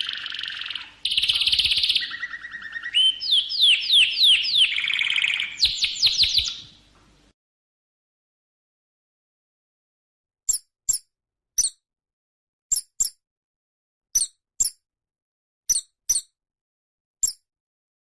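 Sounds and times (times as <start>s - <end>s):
small animal squeaking: 11.6s - 11.8s, 14.2s - 14.8s.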